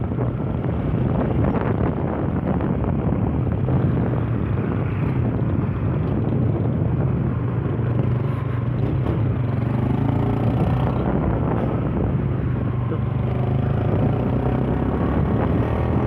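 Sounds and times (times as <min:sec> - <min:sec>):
wind buffeting microphone: 0:00.0 - 0:16.0.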